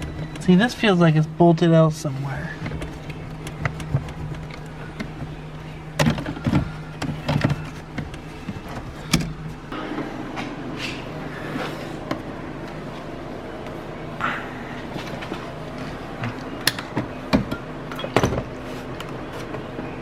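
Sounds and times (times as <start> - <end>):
steady low hum: 0.0 - 20.0
tools knocking on plastic dashboard: 2.6 - 5.4.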